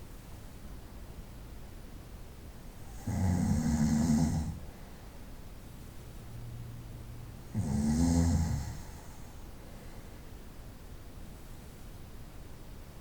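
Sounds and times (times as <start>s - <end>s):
person snoring: 2.9s - 4.6s, 7.5s - 9.2s
quiet breath: 8.3s - 10.6s.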